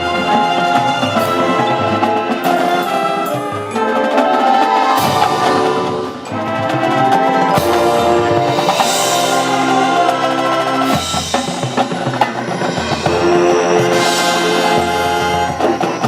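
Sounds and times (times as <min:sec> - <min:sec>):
marching band drums: 0:00.0 - 0:16.0
brass section sustaining chords: 0:12.7 - 0:16.0.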